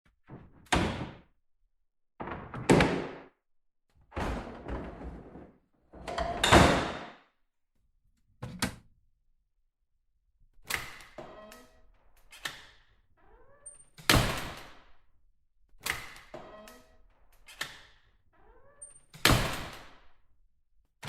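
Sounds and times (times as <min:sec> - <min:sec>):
doors slamming: 0:00.3 - 0:01.3, 0:02.2 - 0:03.3, 0:04.1 - 0:07.1.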